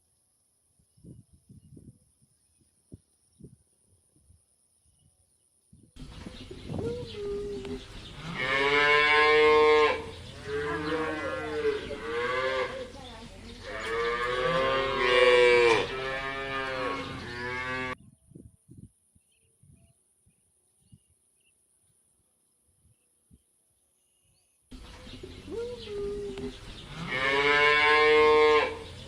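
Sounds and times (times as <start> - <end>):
cow mooing: 8.2 - 12.9, 13.6 - 18.0, 26.9 - 28.8.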